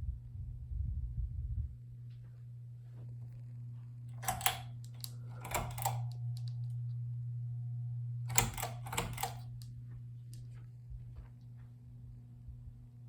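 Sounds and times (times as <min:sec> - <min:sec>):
ceiling fan motor hum: 0:00.0 - 0:13.0
fan clicking and rattling: 0:04.1 - 0:06.8, 0:08.3 - 0:09.7.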